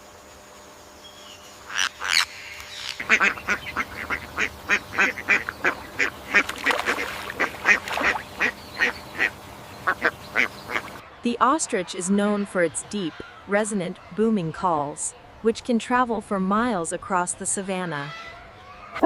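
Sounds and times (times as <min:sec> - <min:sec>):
animal honking calls: 0:03.0 - 0:09.3.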